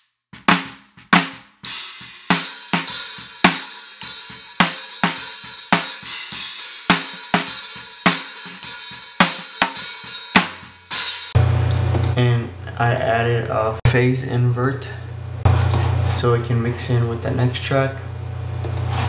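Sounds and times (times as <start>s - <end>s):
kick and snare drum beat: 0.4s - 11.4s
hi-hat and cymbal wash: 1.1s - 11.4s.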